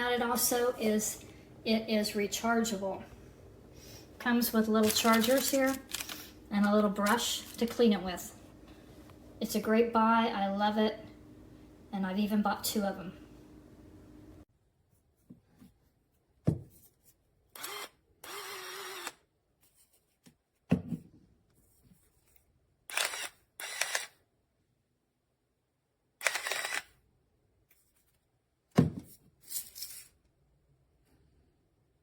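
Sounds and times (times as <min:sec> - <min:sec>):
electric grinder motor: 0:17.6 - 0:19.1.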